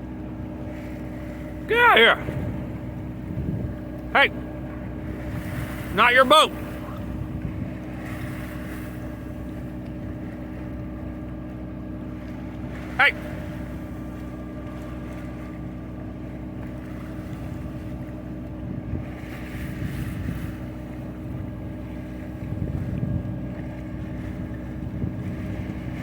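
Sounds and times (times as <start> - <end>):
boat engine running: 0.0 - 26.0
wind noise on microphone: 2.2 - 3.8, 22.5 - 23.5, 24.3 - 26.0.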